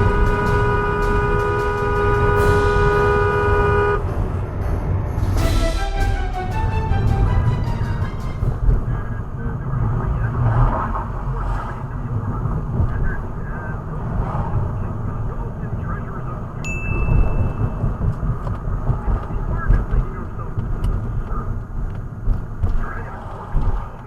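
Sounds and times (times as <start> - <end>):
car road and engine rumble: 0.0 - 5.4, 8.5 - 24.0
high steady beep: 16.7 - 18.0.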